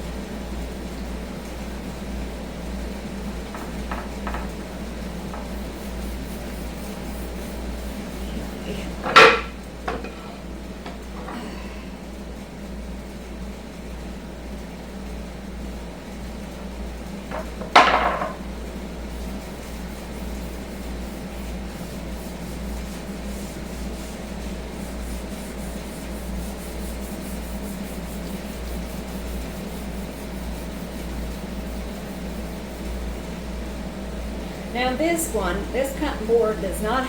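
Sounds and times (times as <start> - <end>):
kitchen appliance hum: 0.0 - 37.0
hand rubbing cutting board: 5.2 - 11.4.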